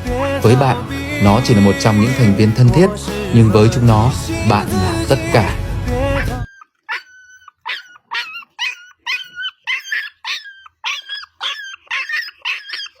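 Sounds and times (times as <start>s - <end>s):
dog yipping: 6.2s - 13.0s.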